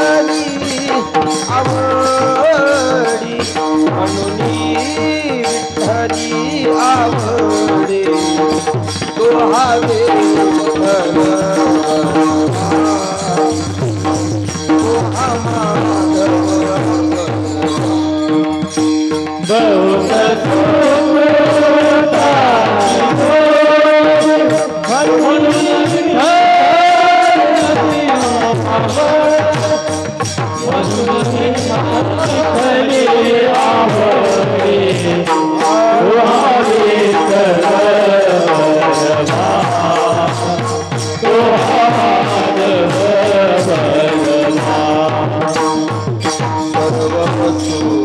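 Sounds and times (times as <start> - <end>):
hand drum beat: 0.0 - 48.0
harmonium holding notes: 0.0 - 48.0
person singing long notes: 19.4 - 45.7.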